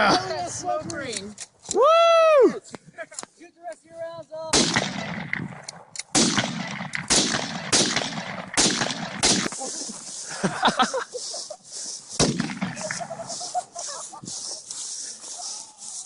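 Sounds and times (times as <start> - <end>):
gunshots: 4.5 - 9.6, 12.2 - 13.1.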